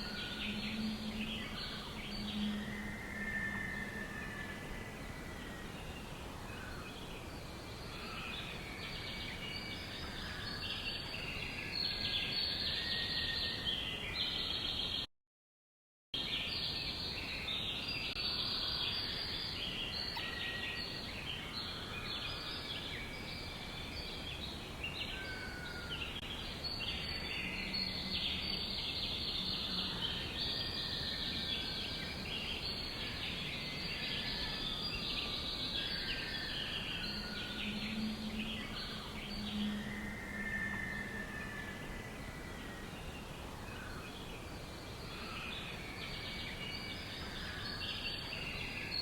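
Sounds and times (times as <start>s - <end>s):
background hiss: 0.0s - 14.9s, 16.2s - 49.0s
birds chirping in chorus: 0.0s - 15.0s, 16.2s - 49.0s.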